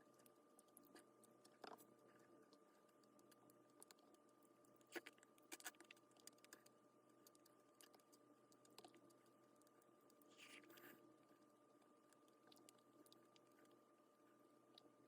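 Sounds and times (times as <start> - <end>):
faint high hum: 0.0 - 15.0.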